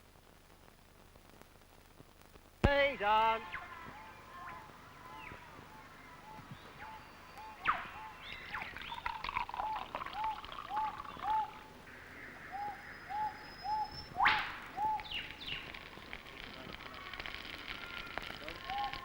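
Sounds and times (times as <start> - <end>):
birds chattering: 3.1 - 19.0
bird whip-crack call: 3.4 - 11.7, 12.5 - 15.8, 16.7 - 19.0.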